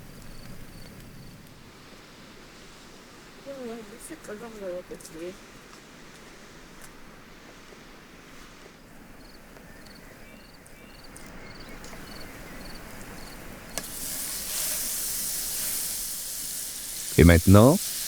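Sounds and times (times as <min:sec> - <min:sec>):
garlic sizzling in butter: 0:13.7 - 0:18.0.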